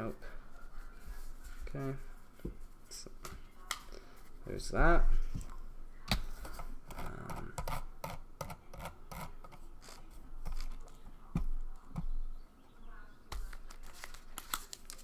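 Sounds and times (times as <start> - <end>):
cards clicking and scraping: 6.1 - 11.0, 13.3 - 15.0.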